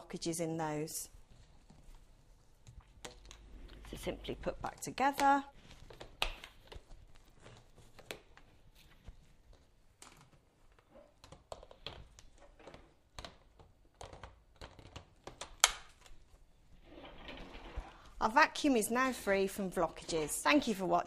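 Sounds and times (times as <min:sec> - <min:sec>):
plastic parts clicking and knocking: 0:09.5 - 0:16.2.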